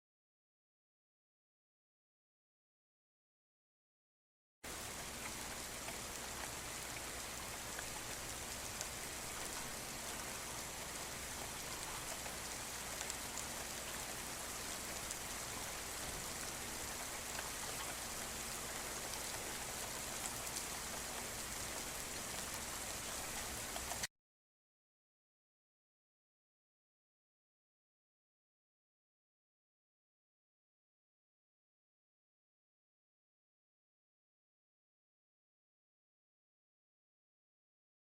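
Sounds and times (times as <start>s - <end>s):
steady rain falling: 4.7s - 24.1s.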